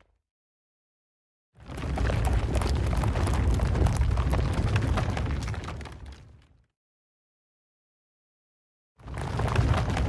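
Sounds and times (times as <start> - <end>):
cracks and creaks: 1.6 - 6.6, 9.1 - 10.0.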